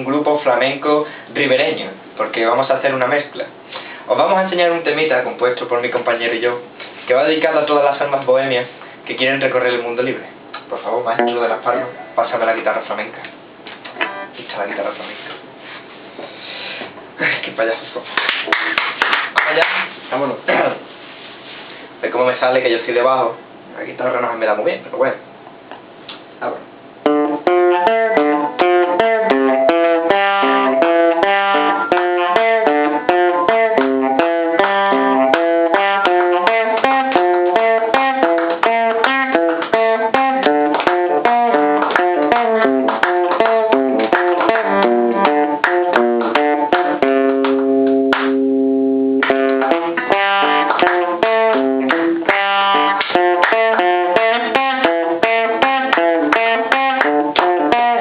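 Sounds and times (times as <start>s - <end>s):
guitar plucking melody: 11.2s - 12.2s, 13.9s - 14.4s, 27.0s - 58.0s.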